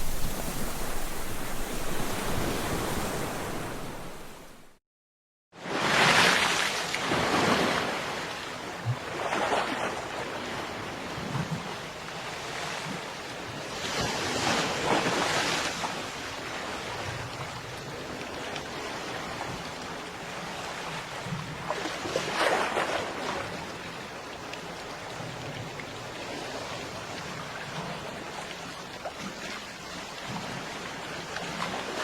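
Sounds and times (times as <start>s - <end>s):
waves breaking on beach: 0.0s - 4.8s, 5.6s - 32.0s.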